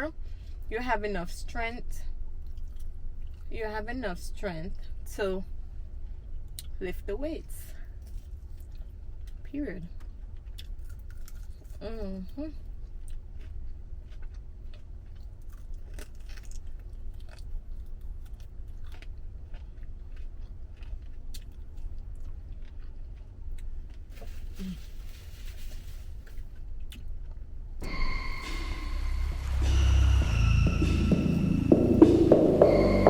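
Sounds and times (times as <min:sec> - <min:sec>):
chewing and biting: 0:02.3 - 0:03.5, 0:07.8 - 0:11.8, 0:12.5 - 0:24.6
music: 0:27.8 - 0:33.0.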